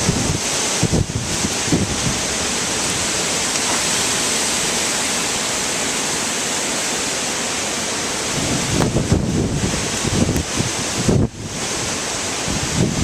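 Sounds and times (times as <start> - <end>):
strong wind blowing: 0.0 - 7.0, 7.7 - 13.0.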